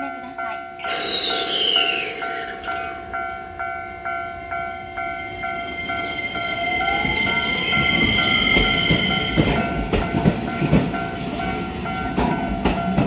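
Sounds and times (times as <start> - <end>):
electric train whine: 0.0 - 13.0
train wheels clattering over rails: 6.1 - 13.0.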